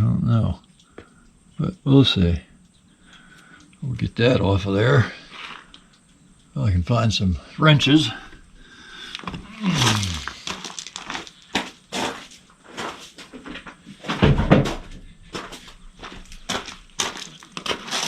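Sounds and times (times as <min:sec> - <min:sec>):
heavy thump: 0:14.1 - 0:15.0.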